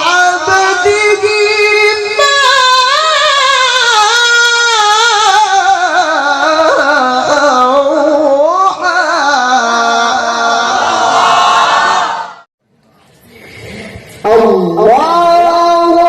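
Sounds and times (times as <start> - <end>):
man reciting in melismatic chant: 0.0 - 10.9, 14.2 - 16.0.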